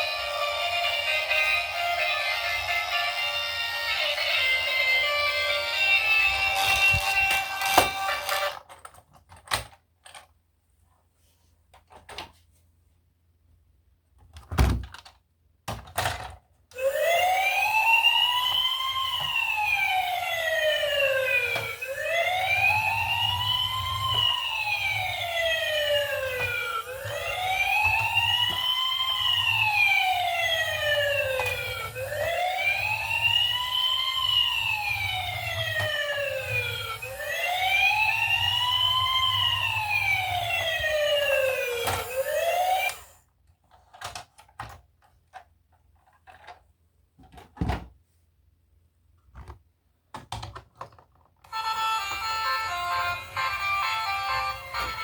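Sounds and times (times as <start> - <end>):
toy siren wailing: 0.0 - 8.6, 16.8 - 43.2, 51.5 - 55.0.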